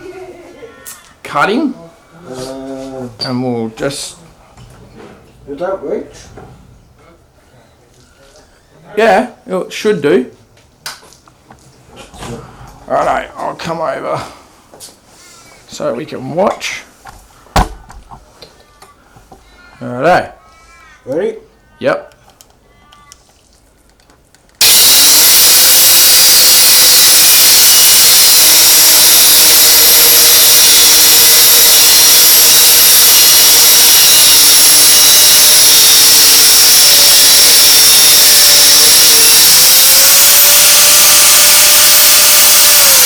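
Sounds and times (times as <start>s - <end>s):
angle grinder cutting metal rod: 24.6s - 43.0s.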